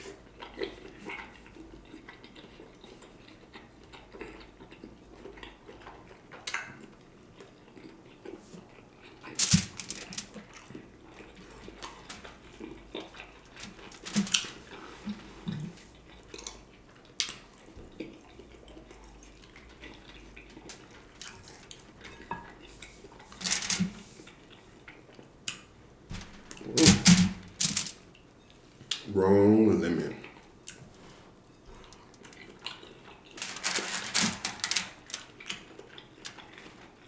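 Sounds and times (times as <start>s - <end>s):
person chewing food: 0.0s - 9.4s, 10.3s - 23.3s, 30.2s - 33.4s, 35.0s - 37.0s.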